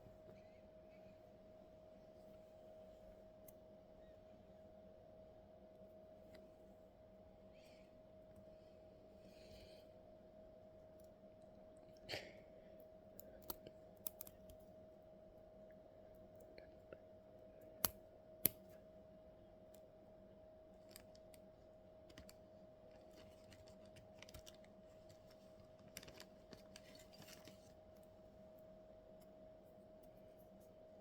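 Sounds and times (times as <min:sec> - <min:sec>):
faint steady hum: 0:00.0 - 0:31.0
light clicks and taps: 0:20.8 - 0:28.1.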